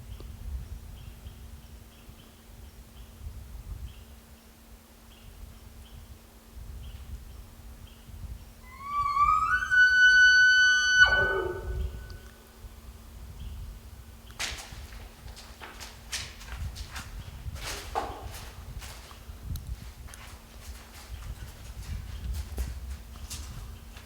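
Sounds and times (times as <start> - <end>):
elk bugling: 8.6 - 12.4.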